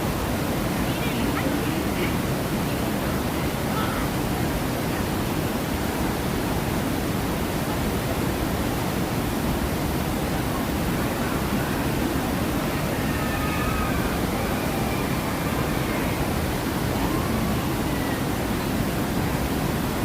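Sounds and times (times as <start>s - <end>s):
rushing water: 0.0s - 20.0s.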